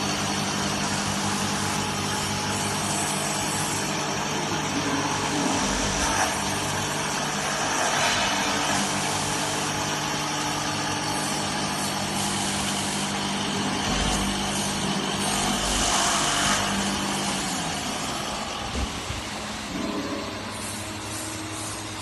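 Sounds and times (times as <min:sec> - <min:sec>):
machine hissing: 0:00.0 - 0:22.0
noisy machine sound: 0:00.0 - 0:22.0
router motor hum: 0:00.0 - 0:22.0.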